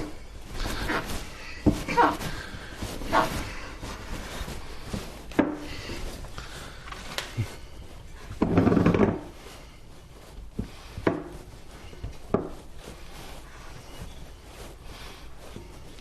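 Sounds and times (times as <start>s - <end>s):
hands kneading dough: 0.0s - 16.0s.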